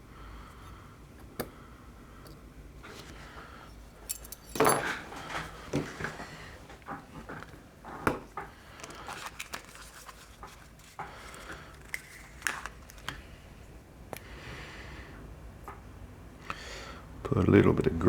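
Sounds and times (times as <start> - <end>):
tweezers clicking on metal parts: 4.1 - 4.7.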